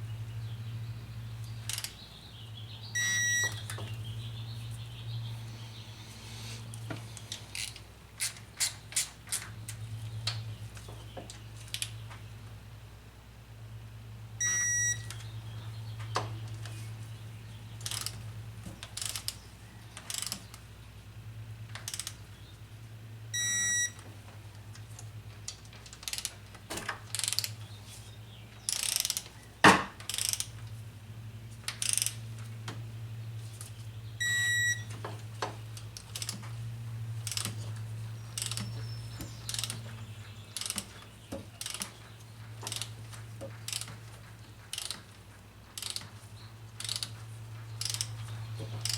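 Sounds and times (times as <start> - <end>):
steady low hum: 0.0 - 48.9
short electronic beep: 3.0 - 3.6, 14.4 - 15.1, 23.4 - 24.0, 34.2 - 34.9
socket ratchet clicking: 7.2 - 9.5, 17.8 - 18.2, 21.8 - 22.2, 30.1 - 30.6, 31.7 - 32.2, 37.2 - 37.6, 38.4 - 38.8, 39.4 - 39.8, 40.6 - 40.9, 41.6 - 42.0, 42.7 - 43.0, 43.6 - 44.0, 44.7 - 45.1, 45.8 - 46.1, 46.7 - 48.2.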